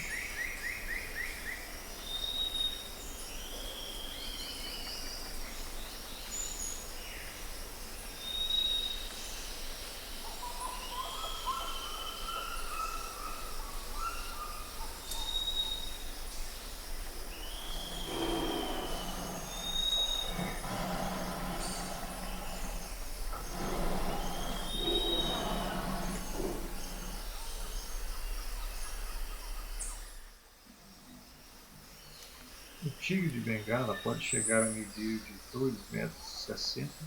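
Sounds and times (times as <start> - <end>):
birds calling: 10.4 - 30.3, 31.9 - 37.0
steady high hiss: 15.1 - 37.0.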